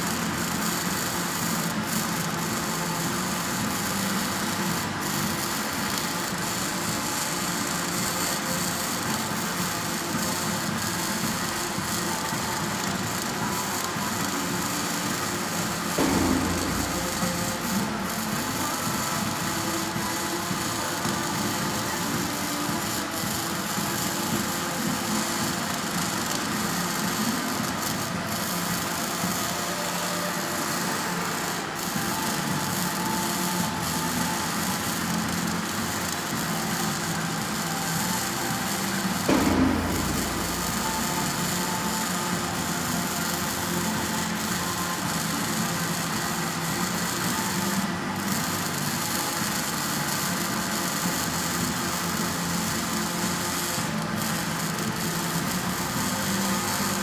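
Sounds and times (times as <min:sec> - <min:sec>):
welding arc buzzing hiss: 0:00.0 - 0:57.0
low machine hum: 0:15.8 - 0:22.7, 0:38.3 - 0:45.4.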